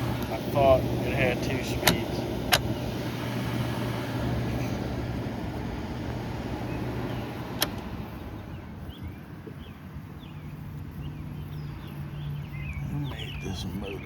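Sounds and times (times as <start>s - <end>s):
air conditioner hum and fan: 0.0s - 10.1s.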